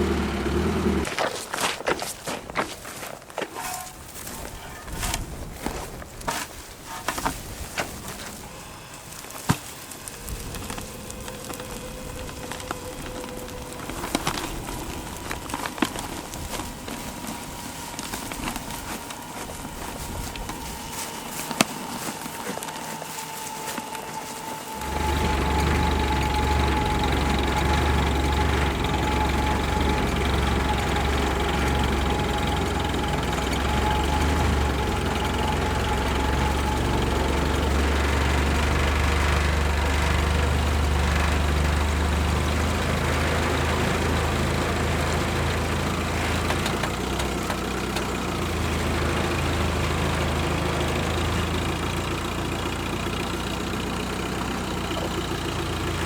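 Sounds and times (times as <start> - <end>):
atv engine droning: 0.0 - 1.4, 6.9 - 56.0
thin steady whine: 8.0 - 42.8.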